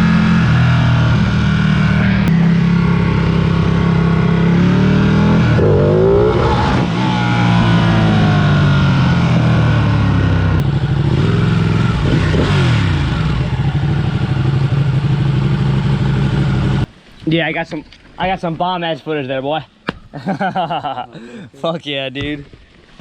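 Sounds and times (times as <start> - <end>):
motorcycle engine revving: 0.0 - 16.9.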